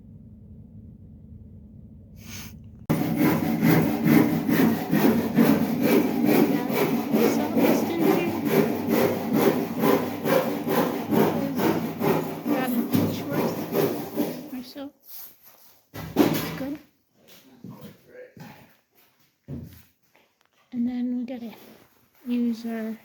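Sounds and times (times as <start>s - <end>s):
faint low rumble: 0.0s - 2.9s
hand saw cutting wood: 2.3s - 14.8s.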